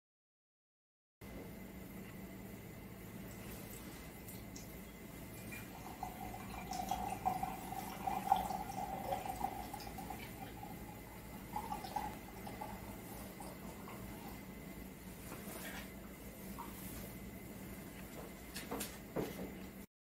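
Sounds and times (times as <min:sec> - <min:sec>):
water pouring into a vessel: 0:03.3 - 0:14.6.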